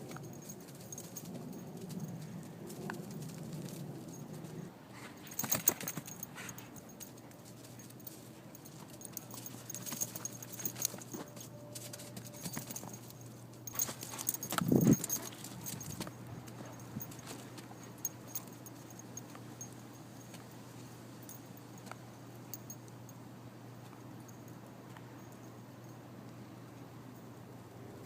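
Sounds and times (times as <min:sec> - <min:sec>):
taps scuffs and jingles: 0:00.0 - 0:20.6.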